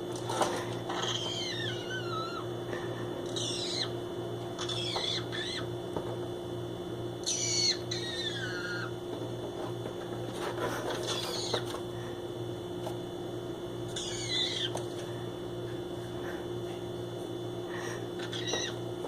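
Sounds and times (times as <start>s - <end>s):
steady low hum: 0.0s - 19.0s
parrot descending calls: 0.9s - 2.5s, 3.3s - 4.0s, 4.6s - 5.7s, 7.2s - 9.0s, 11.0s - 11.6s, 14.0s - 14.8s, 18.2s - 18.8s.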